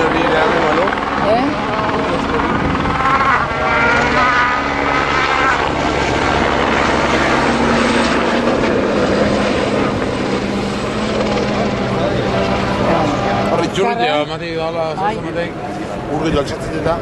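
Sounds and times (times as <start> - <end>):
helicopter droning overhead: 0.0 - 17.0.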